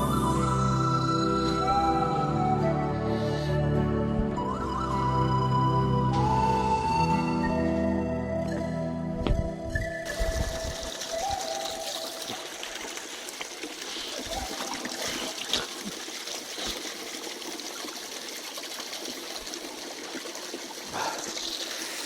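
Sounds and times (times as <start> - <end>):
water trickling and splashing: 10.1 - 22.0.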